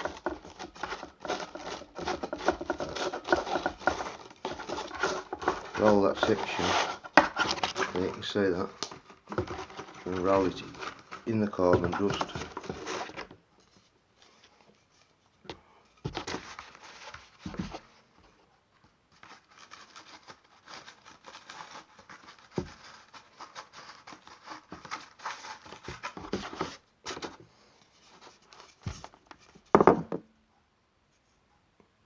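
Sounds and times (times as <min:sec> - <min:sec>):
rustling and scraping: 0:00.0 - 0:30.2.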